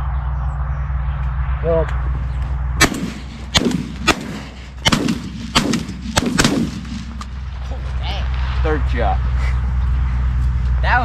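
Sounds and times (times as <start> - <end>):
shotgun shots: 2.8 - 7.3.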